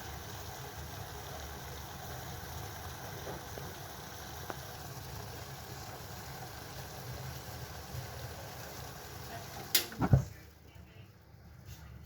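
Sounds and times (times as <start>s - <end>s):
pot boiling on a stove: 0.0s - 12.0s.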